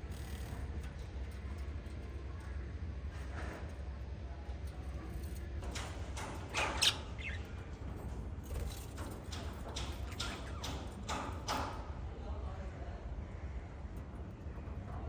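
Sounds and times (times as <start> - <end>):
parrots chirping: 6.6 - 7.5.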